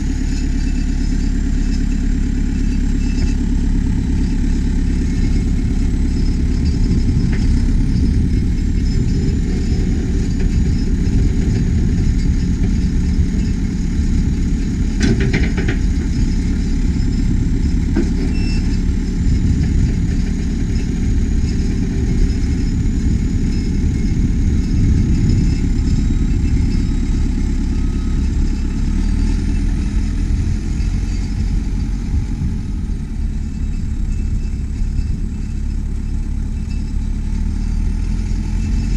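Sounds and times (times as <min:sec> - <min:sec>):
diesel engine running: 0:00.0 - 0:38.9
clatter of knocks: 0:14.9 - 0:16.4.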